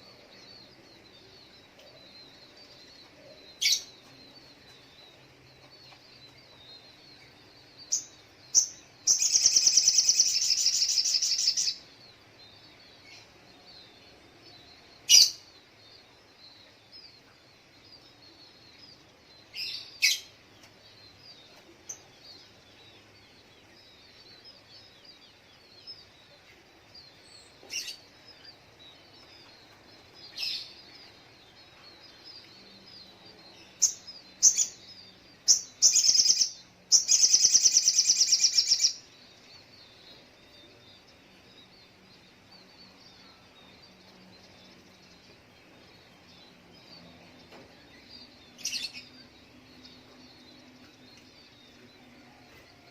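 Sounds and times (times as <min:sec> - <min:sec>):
small birds twittering: 0:00.0 - 0:52.9
sharp high bird chirps: 0:06.7 - 0:11.9, 0:29.8 - 0:40.1
bird rapid trill: 0:07.9 - 0:11.8, 0:33.7 - 0:39.1.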